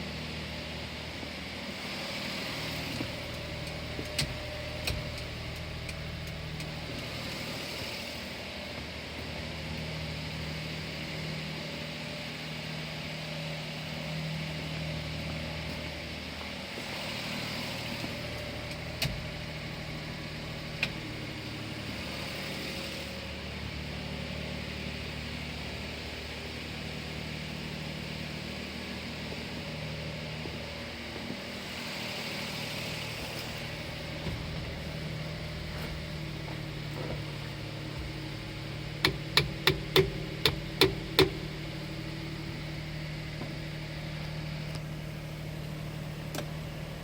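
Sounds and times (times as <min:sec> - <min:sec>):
truck engine idling: 0:01.8 - 0:08.4, 0:17.2 - 0:47.0.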